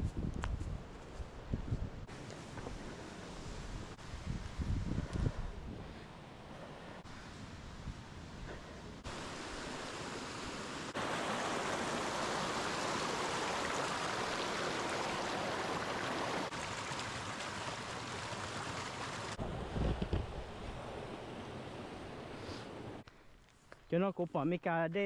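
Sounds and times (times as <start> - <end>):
running water rushing: 9.0 - 23.0.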